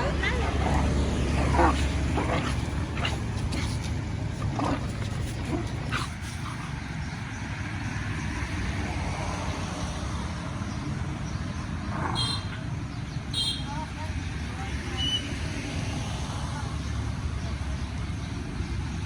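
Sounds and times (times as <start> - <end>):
low background rumble: 0.0 - 7.4.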